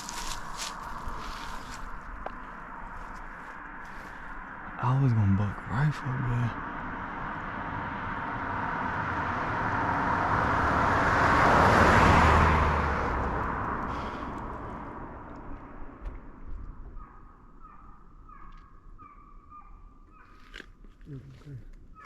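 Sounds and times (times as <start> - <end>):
vehicle passing by: 0.0 - 16.1
distant animal calls: 16.8 - 22.0.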